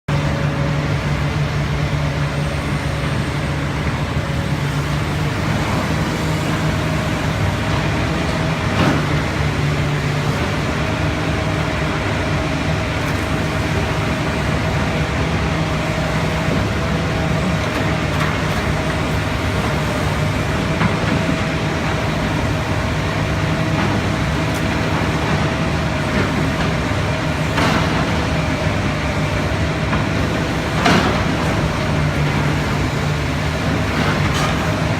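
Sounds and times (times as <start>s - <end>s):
diesel engine running: 0.1s - 34.9s.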